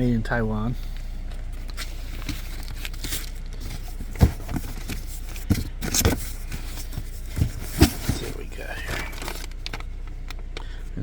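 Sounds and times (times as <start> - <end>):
packaging crinkling and tearing: 1.6 - 9.9.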